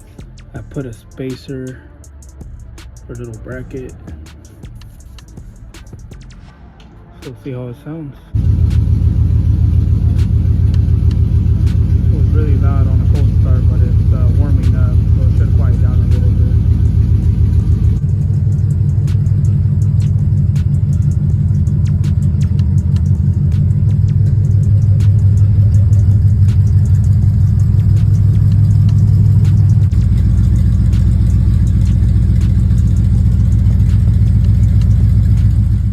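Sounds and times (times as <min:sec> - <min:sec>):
car engine revving loud: 0:08.4 - 0:35.9.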